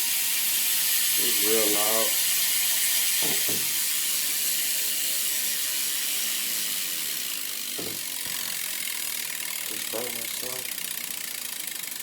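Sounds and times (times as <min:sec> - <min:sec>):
bicycle hub clicking buzz: 0:00.0 - 0:12.0.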